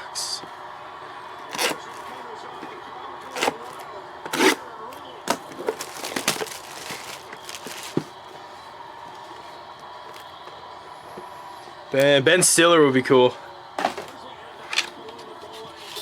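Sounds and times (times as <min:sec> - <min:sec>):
cardboard cracking and crinkling: 0:05.3 - 0:08.2.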